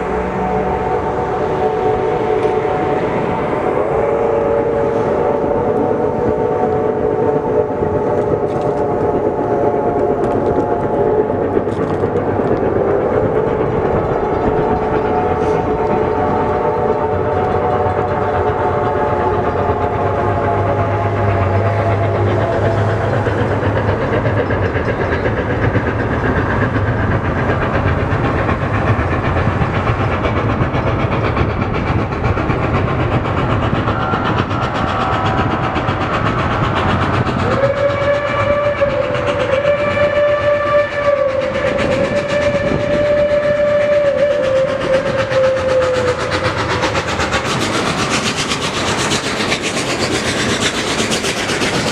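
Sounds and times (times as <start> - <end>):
steam whistle: 0.0 - 11.2, 13.4 - 23.1, 37.4 - 47.4
steam locomotive running: 0.0 - 51.9.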